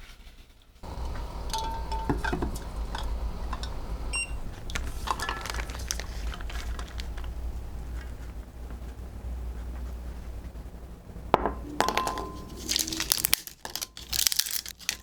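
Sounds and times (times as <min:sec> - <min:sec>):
kitchenware clinking and knocking: 0:00.8 - 0:05.8, 0:11.4 - 0:12.7
low hum: 0:00.8 - 0:13.6.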